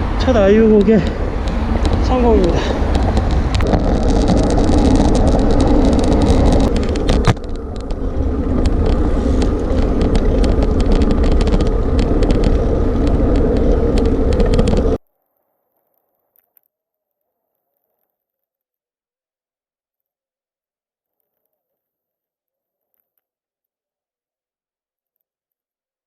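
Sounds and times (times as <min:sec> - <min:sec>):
wind rushing over microphone: 0:00.0 - 0:15.0
scattered clicks: 0:00.3 - 0:15.0.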